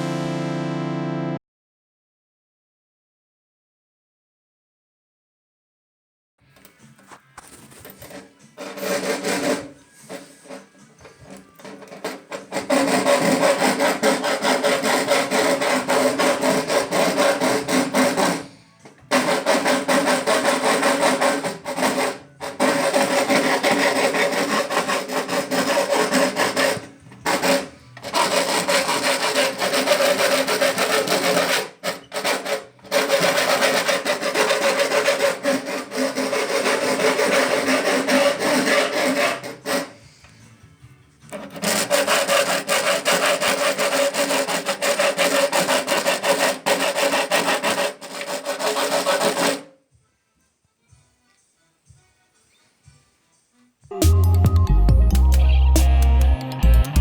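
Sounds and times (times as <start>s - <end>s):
power tool rasping: 7.4s - 40.3s, 41.3s - 49.7s.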